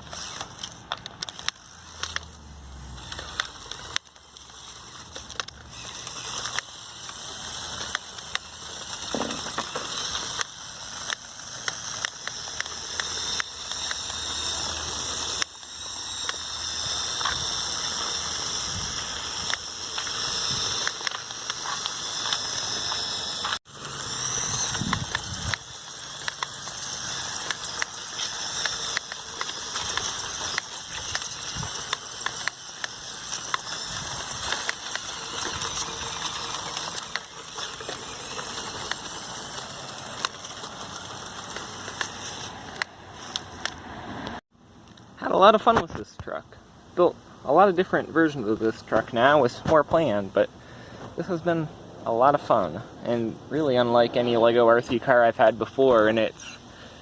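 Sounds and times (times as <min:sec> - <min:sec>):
drivetrain clicks and crackle: 0:00.0 - 0:23.6, 0:24.2 - 0:43.8
motor and gear whine: 0:00.0 - 0:44.4.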